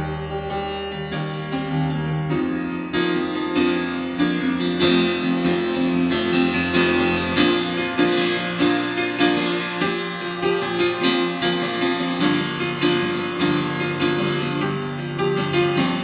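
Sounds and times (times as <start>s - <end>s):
piano chords: 0.0s - 16.0s.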